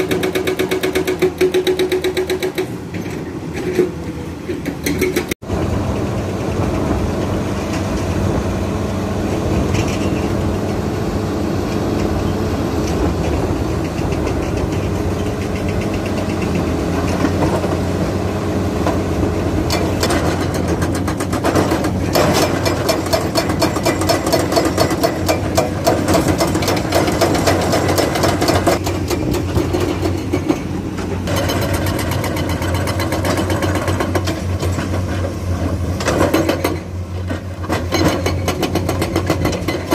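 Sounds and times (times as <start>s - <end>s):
excavator diesel engine running: 0.0s - 39.9s
rattling and clattering: 12.9s - 17.8s, 19.7s - 39.9s.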